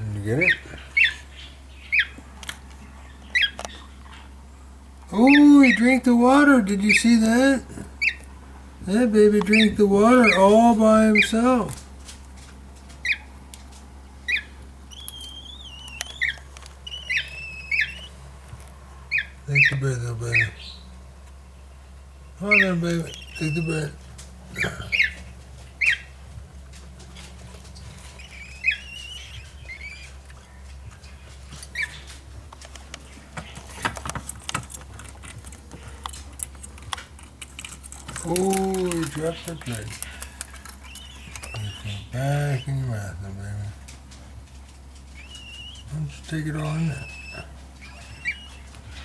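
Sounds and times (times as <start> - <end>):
cockatiel chirping: 0.4 - 2.2, 3.1 - 4.2, 8.0 - 8.2, 13.0 - 13.3, 14.2 - 18.2, 19.1 - 20.9, 22.4 - 23.9, 25.8 - 26.2, 28.1 - 32.1, 39.2 - 42.8, 45.1 - 45.9, 46.6 - 49.0.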